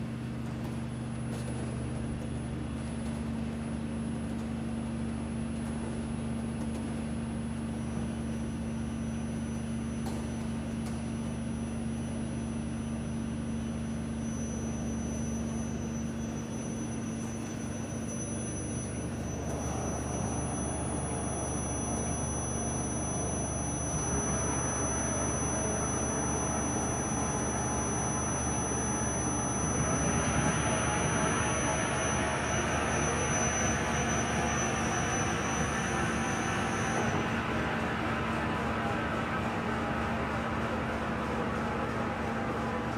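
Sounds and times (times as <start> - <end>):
faint high whine: 8.8 - 38.3
lathe machine hum: 18.1 - 42.9.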